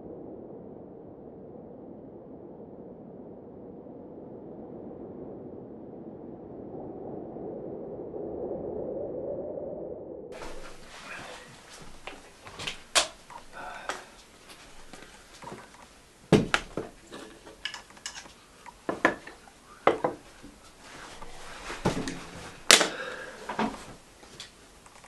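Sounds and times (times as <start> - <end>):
hard objects knocking and clinking: 10.4 - 25.0.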